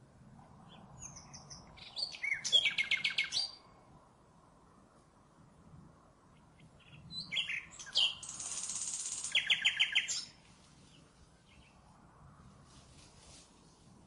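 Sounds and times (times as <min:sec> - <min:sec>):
nightingale singing: 0:00.6 - 0:03.7, 0:06.3 - 0:11.8.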